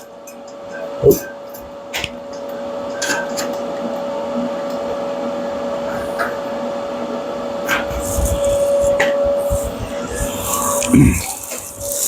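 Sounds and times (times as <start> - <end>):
electric motor whining: 7.8 - 12.0.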